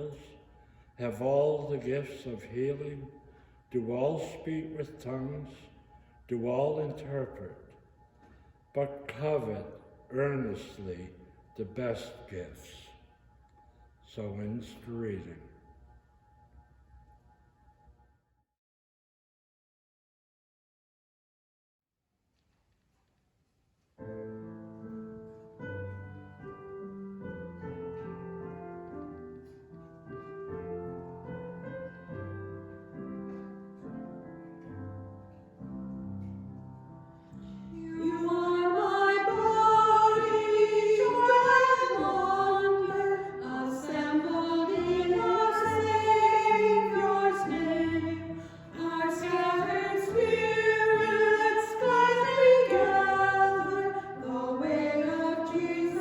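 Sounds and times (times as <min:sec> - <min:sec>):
voices singing a hymn: 0:37.8 - 0:56.0.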